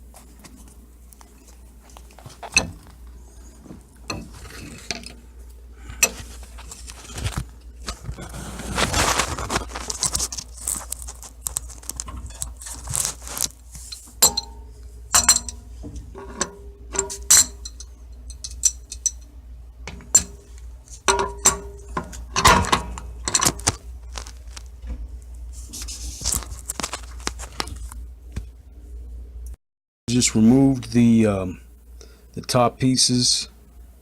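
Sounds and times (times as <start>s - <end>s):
metal parts clanking and rattling: 2.2s - 2.9s, 4.1s - 5.2s, 5.9s - 19.3s, 19.9s - 24.6s.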